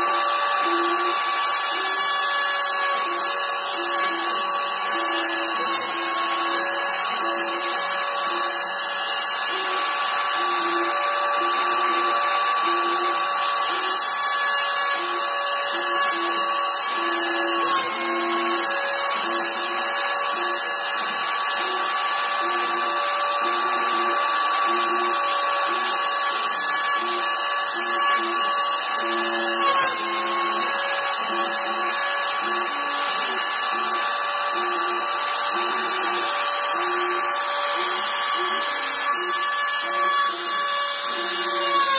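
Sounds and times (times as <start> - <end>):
pulsing motor hum: 0.0 - 41.9
router spindle whine: 0.0 - 41.9.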